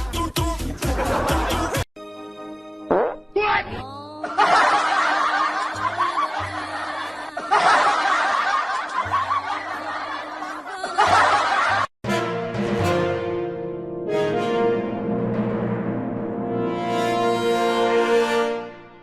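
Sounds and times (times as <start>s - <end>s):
background music: 0.0s - 19.0s
people laughing: 0.8s - 1.8s, 4.2s - 11.9s.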